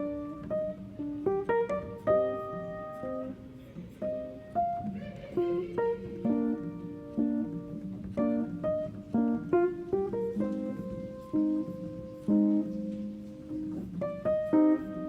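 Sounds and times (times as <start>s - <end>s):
plucked acoustic guitar melody: 0.0s - 15.0s.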